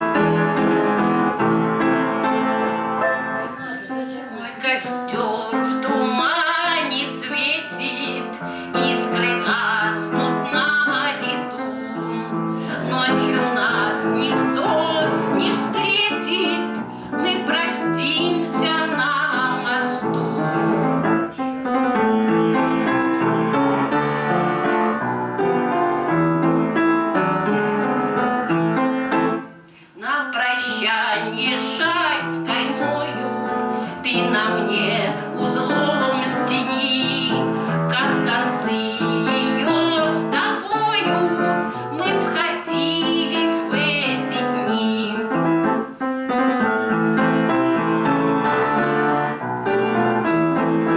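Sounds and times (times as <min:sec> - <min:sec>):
piano: 0:00.0 - 0:50.9
woman singing: 0:03.4 - 0:22.8, 0:30.0 - 0:46.4.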